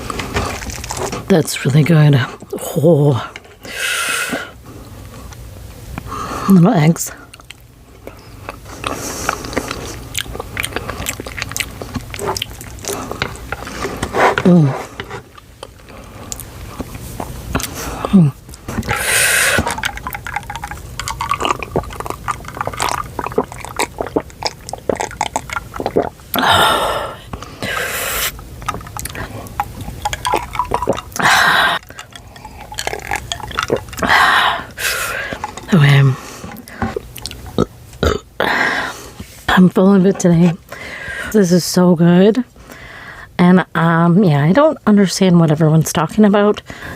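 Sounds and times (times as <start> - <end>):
chewing noodles: 0.0 - 1.3, 7.3 - 38.2
wet mouth clicks and smacks: 18.5 - 26.3, 28.2 - 35.7
loud noodle slurps: 18.7 - 31.9.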